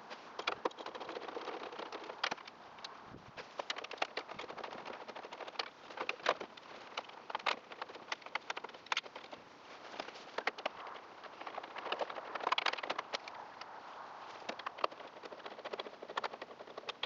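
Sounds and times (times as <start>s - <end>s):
clicks and knocks of hand work: 0.1s - 13.7s.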